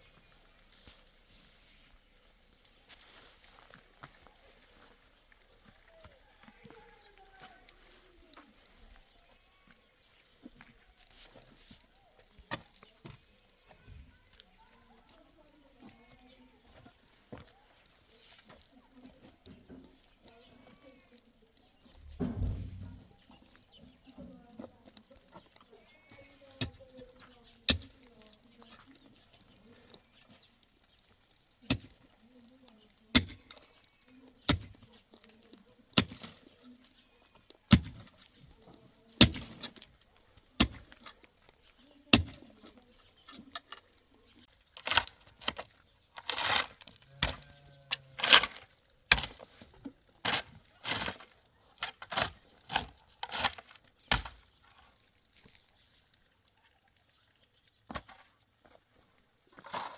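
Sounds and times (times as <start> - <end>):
sharp knocks: 22.0 - 23.1.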